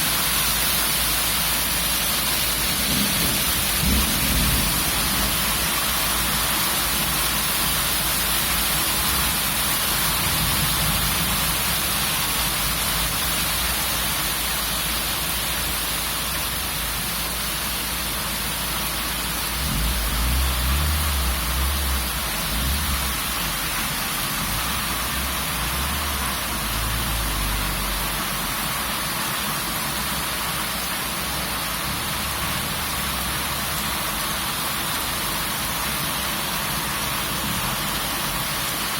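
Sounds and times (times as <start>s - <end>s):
heavy rain: 0.0s - 38.9s
low rumble: 19.5s - 28.4s.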